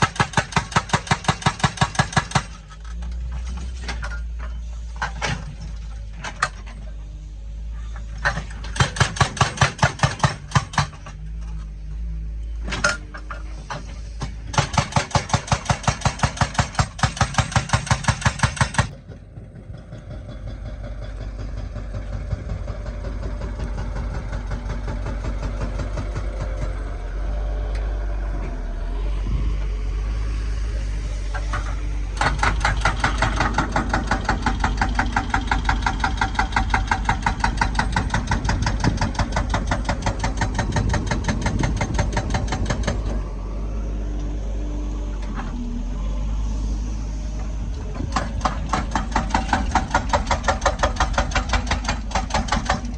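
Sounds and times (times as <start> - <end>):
hydraulic breaker hammering: 0.0 - 2.8, 8.2 - 11.2, 12.7 - 19.2, 31.4 - 43.2, 48.0 - 52.9
diesel engine running: 0.0 - 52.9.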